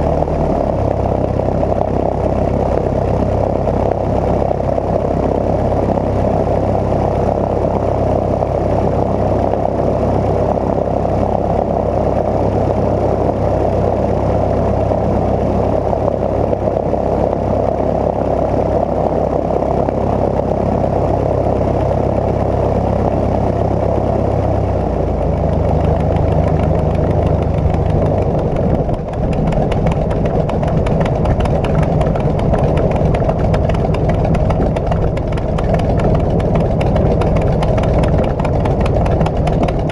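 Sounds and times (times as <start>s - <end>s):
light aircraft engine and propeller: 0.0s - 39.9s.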